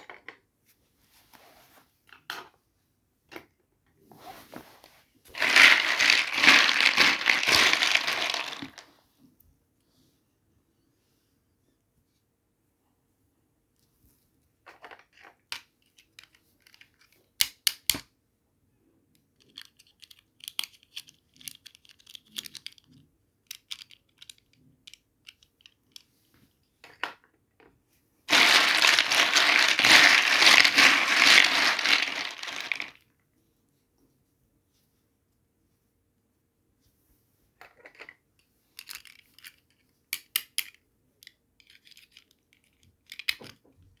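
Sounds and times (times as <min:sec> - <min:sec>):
packaging crinkling: 0:05.4 - 0:08.8, 0:28.3 - 0:33.0
packaging tearing: 0:05.4 - 0:08.8, 0:28.3 - 0:32.9.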